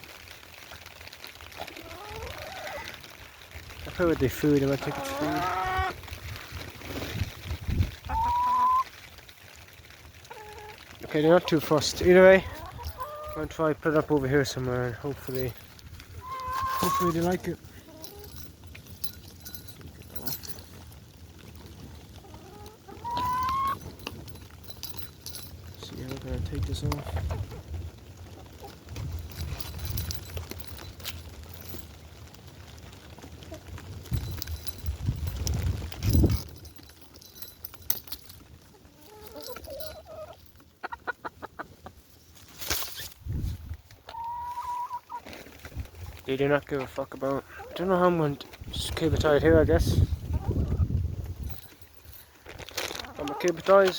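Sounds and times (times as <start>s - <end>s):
hens clucking: 1.4s - 3.1s, 4.0s - 6.2s, 8.0s - 9.0s, 9.7s - 18.3s, 22.1s - 23.9s, 38.7s - 42.0s, 44.0s - 45.3s, 46.8s - 48.2s, 49.2s - 51.0s, 53.0s - 53.9s
hen giving drawn-out call: 4.9s - 6.0s, 8.1s - 8.9s, 16.2s - 17.2s, 22.3s - 23.8s.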